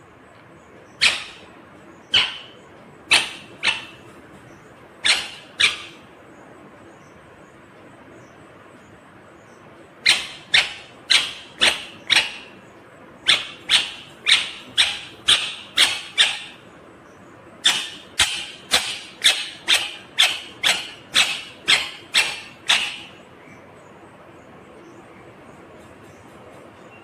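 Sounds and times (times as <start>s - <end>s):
parakeet harsh calls: 0.8s - 6.2s, 10.0s - 16.7s, 17.6s - 23.6s.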